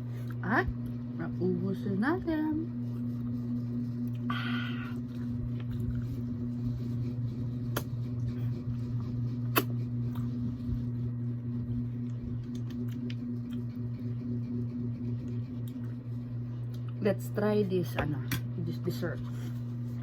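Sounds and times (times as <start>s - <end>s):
steady low hum: 0.0s - 20.0s
eating and food handling: 2.8s - 10.5s, 11.6s - 14.0s.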